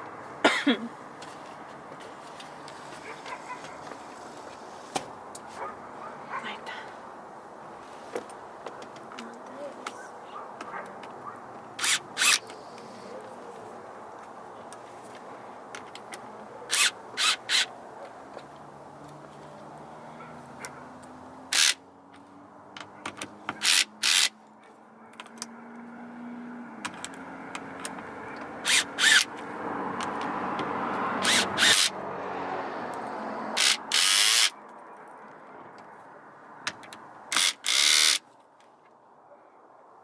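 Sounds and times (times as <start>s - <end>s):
power driver whirring: 11.8s - 12.8s, 16.7s - 17.7s, 27.7s - 29.3s, 31.2s - 31.9s, 33.6s - 34.5s, 37.3s - 38.2s.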